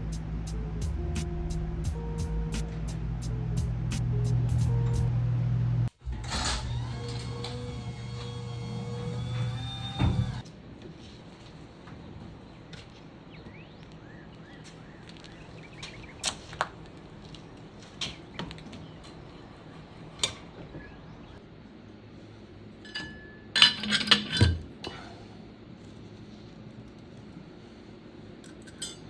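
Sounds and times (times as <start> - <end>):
low steady hum: 0.0 - 10.8
metal parts clinking and clanking: 6.0 - 8.2, 22.8 - 24.7, 28.4 - 29.0.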